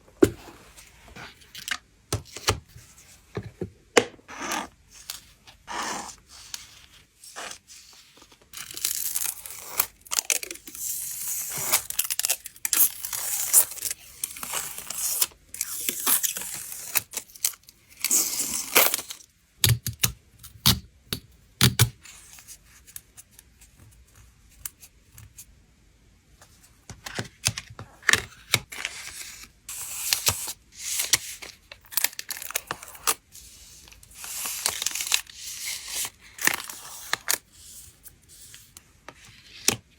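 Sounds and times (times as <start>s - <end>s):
packing materials tearing and crinkling: 8.5s - 19.2s, 33.8s - 37.5s.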